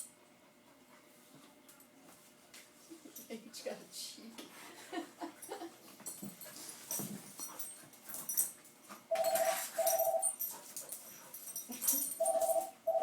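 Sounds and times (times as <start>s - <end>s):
puppies scuffling and snuffling: 5.4s - 12.7s.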